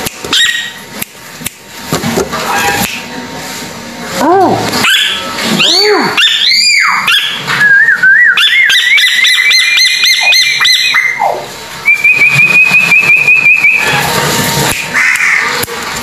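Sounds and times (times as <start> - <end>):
whistled notes: 7.5 - 15.0.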